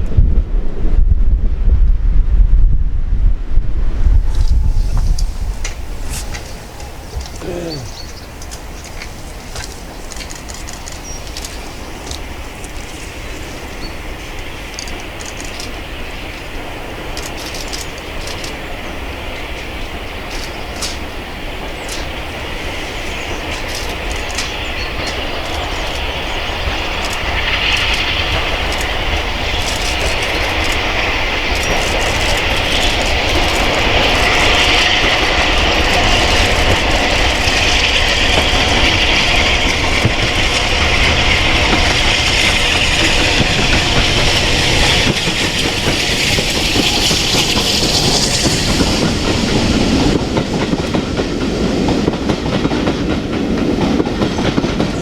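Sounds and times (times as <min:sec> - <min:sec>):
train wheels clicking over rail joints: 0:04.2 - 0:55.0.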